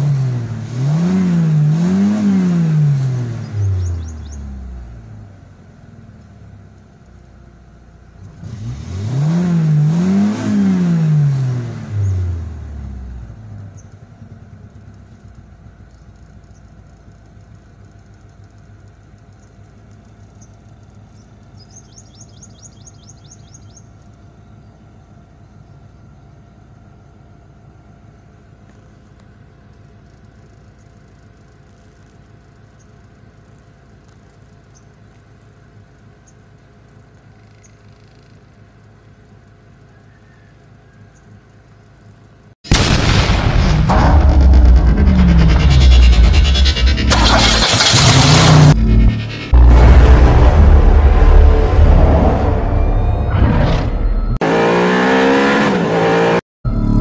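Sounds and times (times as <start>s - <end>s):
car engine revving and idling: 0.0s - 57.0s
high bird-like chirps: 3.4s - 4.6s, 20.3s - 24.8s.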